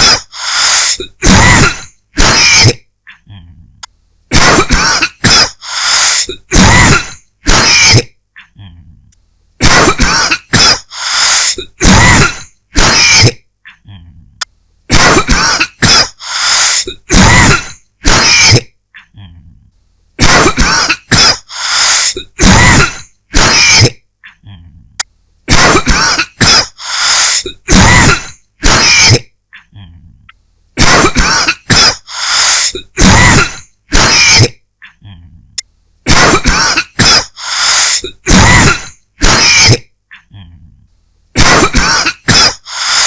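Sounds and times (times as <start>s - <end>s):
person coughing: 0.0s - 3.4s, 4.3s - 8.7s, 9.6s - 13.4s, 14.9s - 19.3s, 20.2s - 24.6s, 25.5s - 29.7s, 30.8s - 34.6s, 36.1s - 40.2s, 41.4s - 43.0s.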